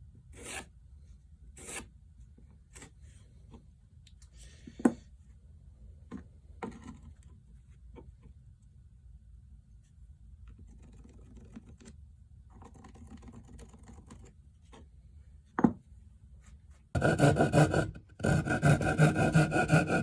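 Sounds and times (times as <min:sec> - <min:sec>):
pencil scratching on wood: 0:17.0 - 0:20.0.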